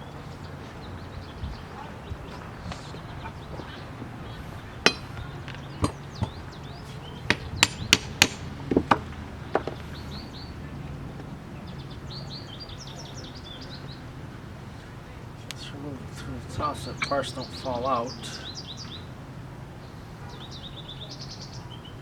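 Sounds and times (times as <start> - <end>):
birds chirping: 0.0 - 22.0
sharp taps and knocks on metal: 4.8 - 6.4, 7.3 - 9.8.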